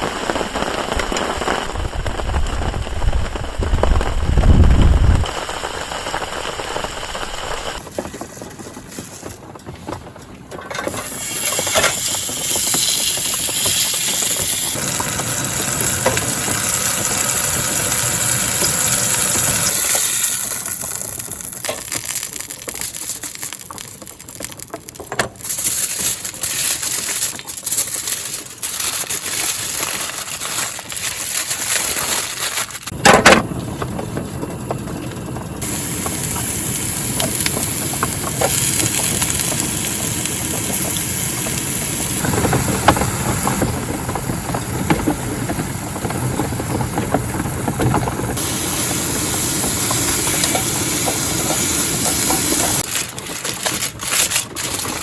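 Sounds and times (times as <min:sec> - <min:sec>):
steak sizzling in a pan: 0:11.0 - 0:22.2, 0:35.6 - 0:46.0, 0:48.4 - 0:52.9.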